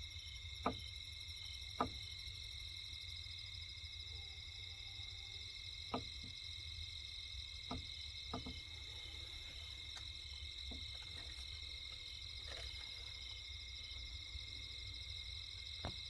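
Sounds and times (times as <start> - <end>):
insects trilling: 0.0 - 16.0
faint knocks: 15.8 - 16.0.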